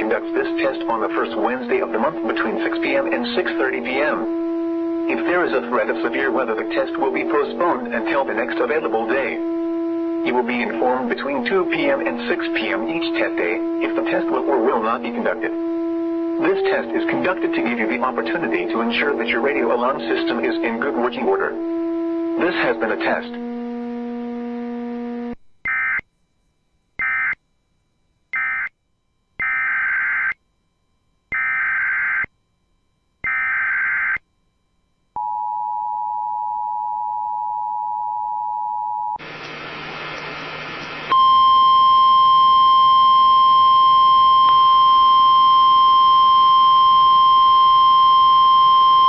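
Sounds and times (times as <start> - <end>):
burst of static: 0.0 - 25.4, 39.2 - 41.2
data noise bursts: 0.0 - 26.0
weather radio alarm tone: 0.0 - 26.0, 27.0 - 27.4, 29.4 - 30.4, 31.3 - 32.3, 33.2 - 34.2, 41.1 - 49.0.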